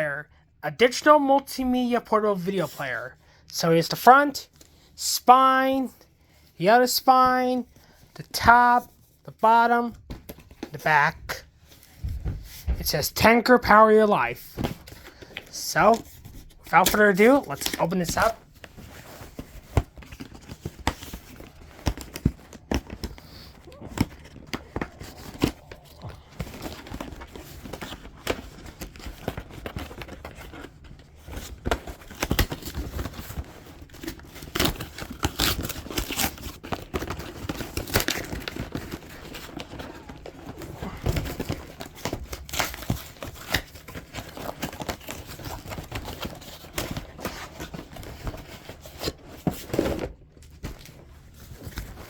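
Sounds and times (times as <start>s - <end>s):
packaging crinkling and tearing: 14.8s - 52.0s.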